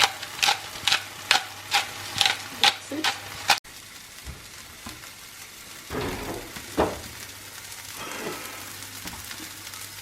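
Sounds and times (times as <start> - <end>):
vegetables sizzling in a frying pan: 0.0 - 10.0
knock against pan: 6.0 - 7.1.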